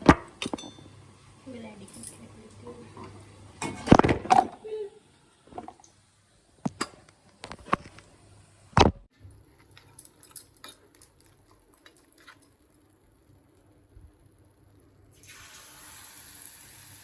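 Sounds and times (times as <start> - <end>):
kitchen utensils and dishes clinking: 0.0 - 1.0, 1.7 - 4.8.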